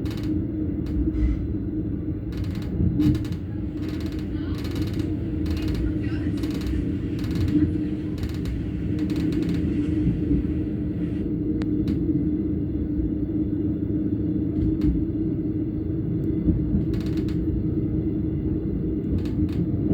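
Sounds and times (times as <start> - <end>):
short clicks and creaks: 0.0 - 1.0, 2.3 - 10.8, 16.8 - 17.5
railcar engine rumble: 0.0 - 19.9.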